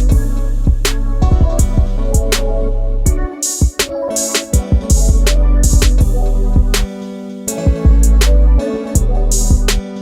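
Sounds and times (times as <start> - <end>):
drums: 0.0 - 2.4, 3.1 - 8.4
sustained bass line: 0.0 - 3.3, 4.9 - 6.9.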